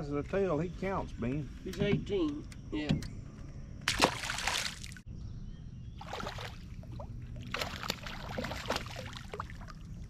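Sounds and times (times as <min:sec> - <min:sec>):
water splashing around boat: 0:06.0 - 0:10.0.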